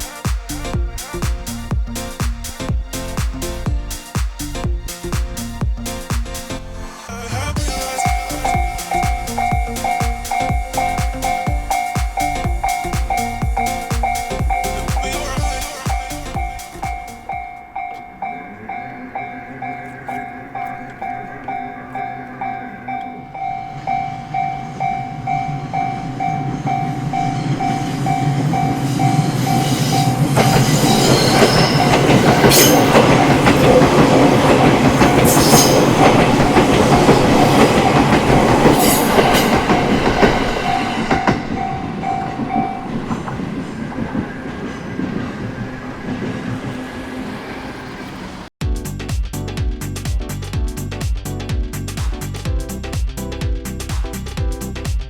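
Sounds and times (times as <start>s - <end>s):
train rumble: 0.0s - 54.8s
level-crossing bell ringing: 7.6s - 43.4s
wheels clacking over rail joints: 8.1s - 47.2s.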